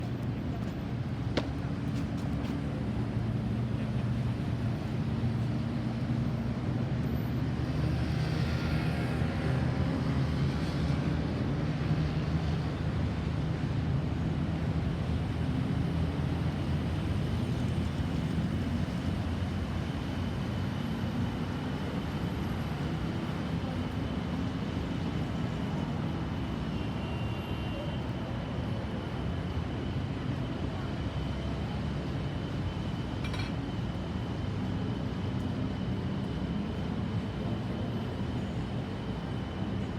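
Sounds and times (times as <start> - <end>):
road traffic rumble: 0.0 - 39.9.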